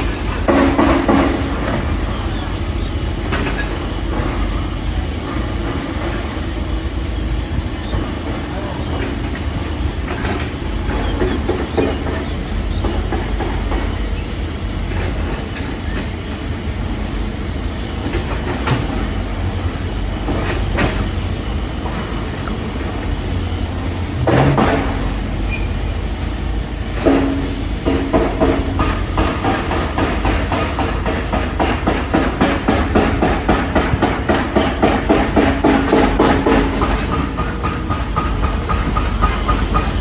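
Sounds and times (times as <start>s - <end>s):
heavy machinery rumble: 0.0s - 40.0s
loud clatter: 24.2s - 25.5s.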